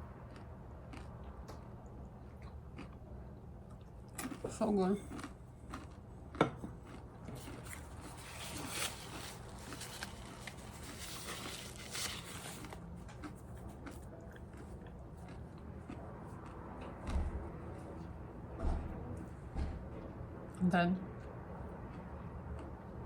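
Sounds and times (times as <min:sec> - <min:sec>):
crunching puff pastry: 0:00.2 - 0:03.1, 0:03.7 - 0:17.9.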